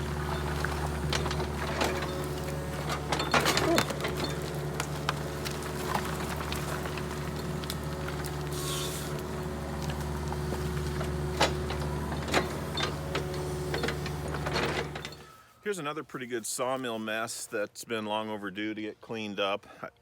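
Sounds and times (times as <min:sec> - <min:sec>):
excavator diesel engine running: 0:00.0 - 0:15.4.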